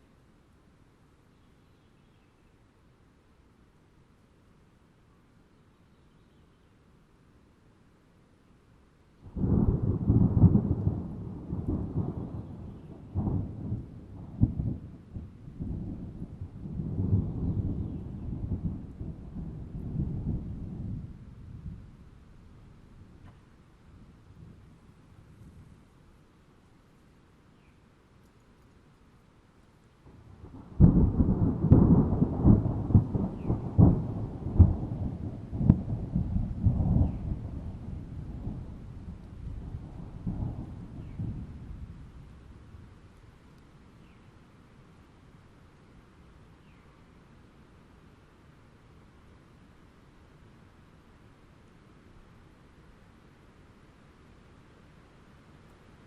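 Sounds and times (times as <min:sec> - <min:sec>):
thunder crack and rumble: 0:09.3 - 0:22.2, 0:30.1 - 0:43.0.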